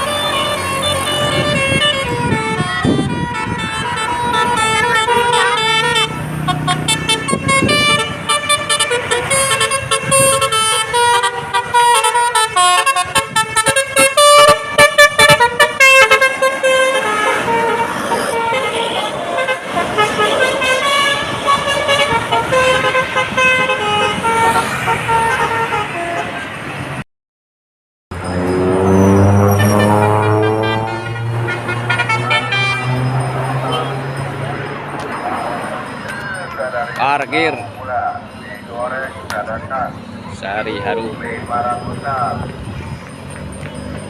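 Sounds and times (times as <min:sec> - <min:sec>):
multi-tone air horn melody: 0:00.0 - 0:26.6, 0:28.3 - 0:34.2
bus engine hum: 0:00.0 - 0:27.0, 0:28.1 - 0:37.0.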